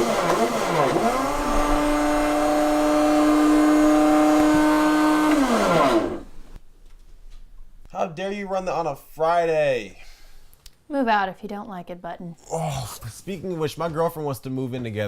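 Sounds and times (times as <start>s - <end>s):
electric motor whine: 0.0s - 6.3s.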